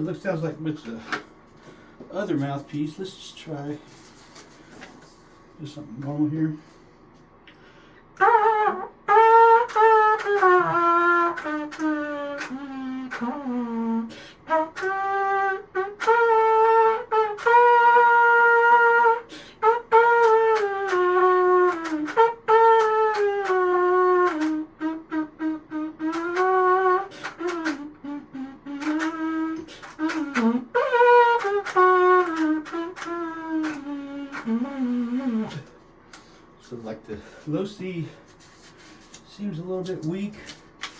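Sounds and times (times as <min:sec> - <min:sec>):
trumpet playing a simple tune: 0:08.2 - 0:35.7.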